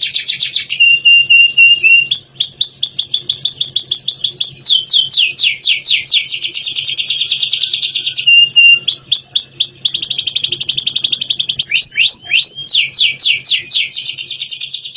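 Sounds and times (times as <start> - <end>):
canary singing trills: 0.0 - 14.9
short level whistle: 0.8 - 2.7, 7.6 - 9.8.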